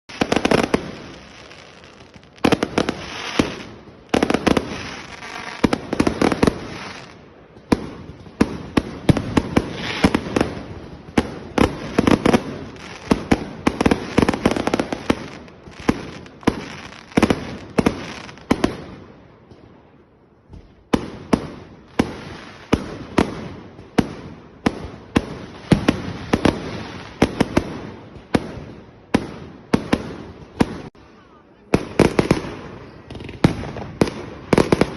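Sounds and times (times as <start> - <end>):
fireworks exploding: 0.0 - 34.9.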